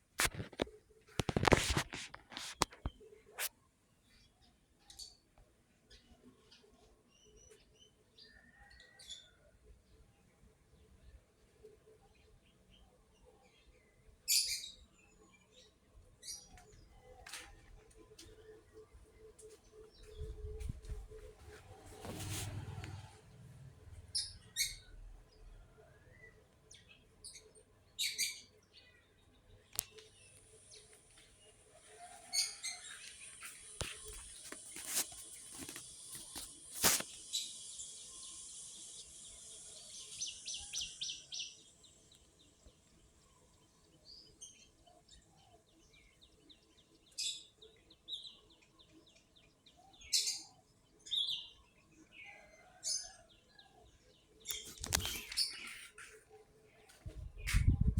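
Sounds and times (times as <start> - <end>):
birds chirping: 54.2 - 57.9.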